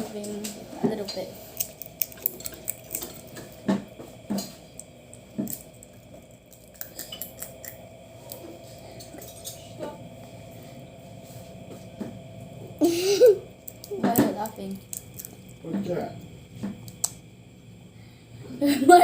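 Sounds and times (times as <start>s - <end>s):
faint steady hum: 0.0s - 19.0s
squishy bites: 1.4s - 3.7s, 4.4s - 8.4s, 13.6s - 15.7s, 16.8s - 17.2s.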